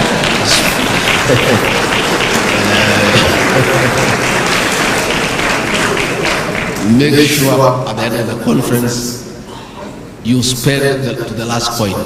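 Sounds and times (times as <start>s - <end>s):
audience applauding: 0.0s - 7.6s.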